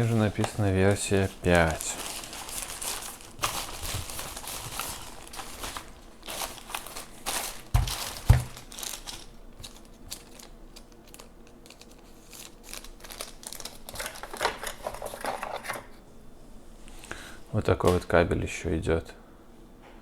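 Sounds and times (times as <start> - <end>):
packaging crinkling and rustling: 0.0 - 15.7
heavy thumps: 7.7 - 8.6.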